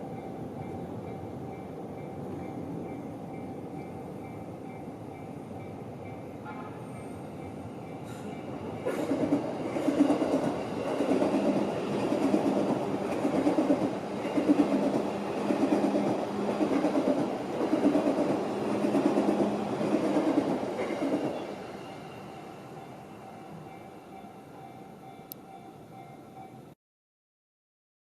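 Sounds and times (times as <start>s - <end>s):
train wheels clacking over rail joints: 8.0s - 21.4s.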